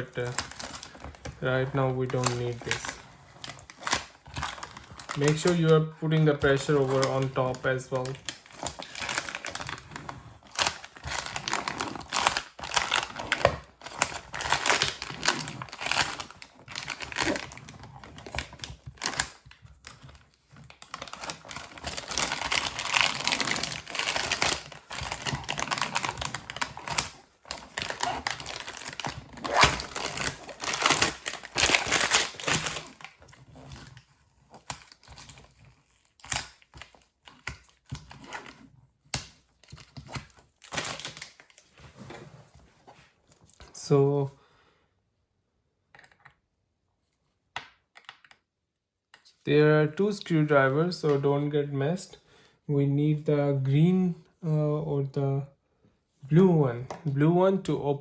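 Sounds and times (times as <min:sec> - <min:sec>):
plastic cover crinkling and scraping: 0:00.0 - 0:44.0.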